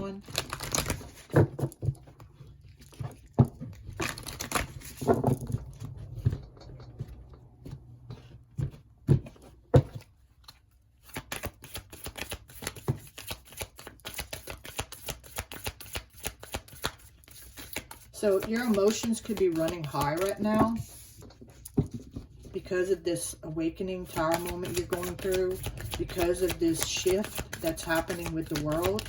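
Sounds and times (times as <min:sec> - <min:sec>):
deck of cards shuffling: 0:00.2 - 0:01.7, 0:03.9 - 0:07.0, 0:10.4 - 0:22.5, 0:24.0 - 0:29.0
cards snapping and rustling: 0:00.2 - 0:01.8, 0:03.7 - 0:05.6, 0:10.4 - 0:20.8, 0:24.2 - 0:29.0.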